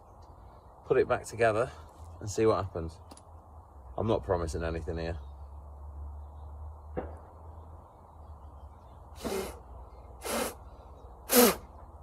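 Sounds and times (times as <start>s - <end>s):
person blowing puffs of breath: 9.2s - 11.7s.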